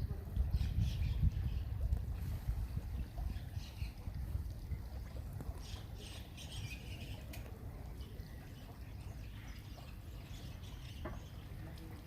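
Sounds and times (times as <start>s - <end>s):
small birds chirping: 0.4s - 2.0s, 2.7s - 12.0s.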